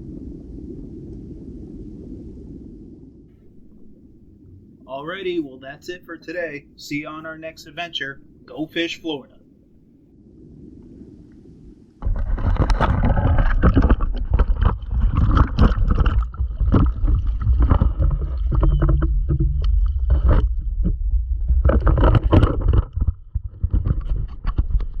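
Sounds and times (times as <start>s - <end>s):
water sloshing and gurgling: 0.0s - 25.0s
irregular knocks and clicks: 12.4s - 25.0s.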